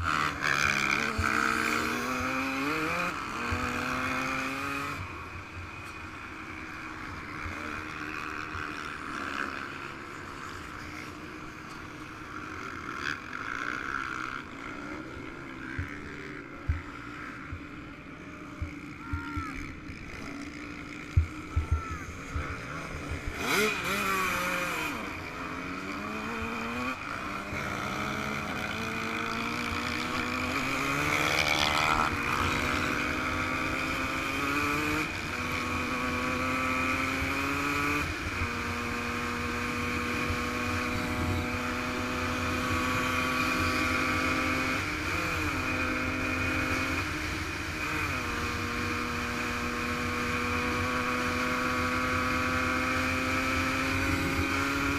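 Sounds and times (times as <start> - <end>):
motocross engine revving: 0.0 - 5.1, 20.1 - 54.9.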